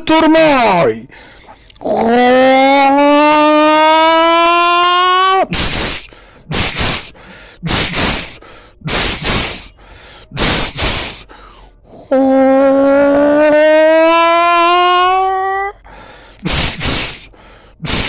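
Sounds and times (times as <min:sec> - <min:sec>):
short hissing bursts: 0:05.6 - 0:09.8, 0:10.4 - 0:11.3, 0:16.5 - 0:18.0.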